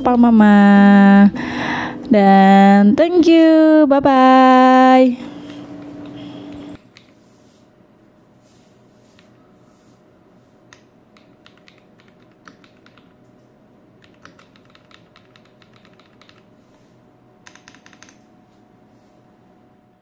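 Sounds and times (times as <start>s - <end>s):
faint steady hum: 0.0s - 20.0s
mechanical keyboard typing: 11.2s - 13.2s, 14.0s - 16.5s, 17.4s - 18.2s.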